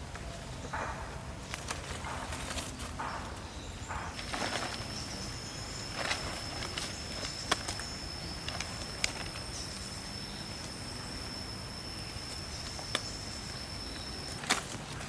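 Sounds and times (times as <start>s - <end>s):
twigs snapping: 4.1s - 10.9s, 12.2s - 15.0s
insect calling high-pitched tone: 4.7s - 14.6s.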